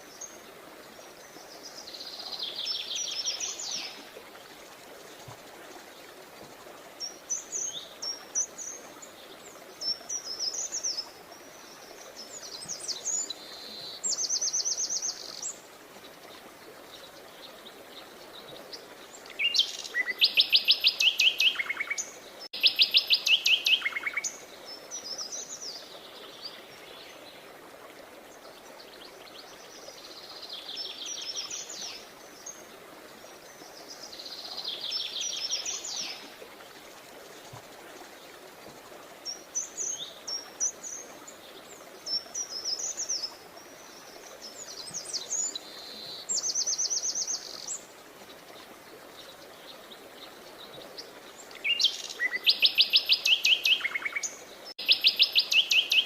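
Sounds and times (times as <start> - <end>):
faint background hiss: 0.0 - 56.0
songbirds chirping and trilling: 39.1 - 56.0.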